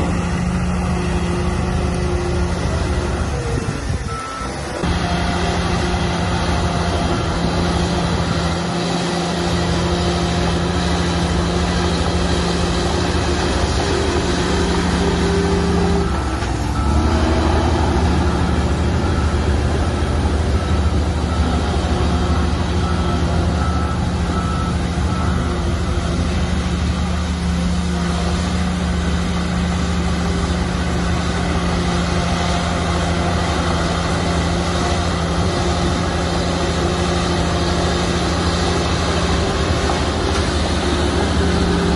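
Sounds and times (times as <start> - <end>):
heavy diesel machinery running: 0.0 - 41.9
reversing alarm beeping: 4.1 - 27.0.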